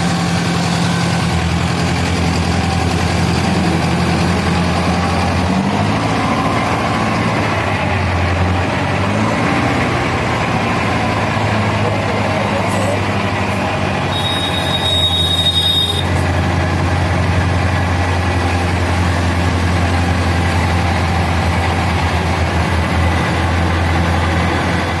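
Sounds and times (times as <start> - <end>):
drilling rig engine humming: 0.0 - 25.0.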